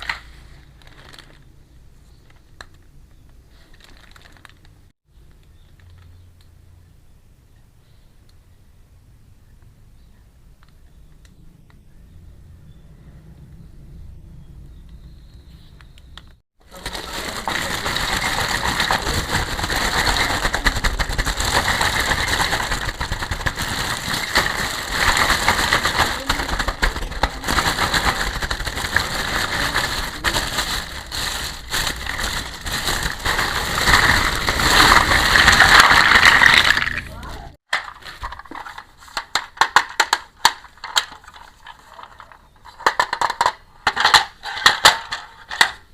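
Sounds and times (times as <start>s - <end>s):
plastic packaging crinkling: 0.0s - 2.8s, 3.5s - 4.9s, 16.6s - 44.7s.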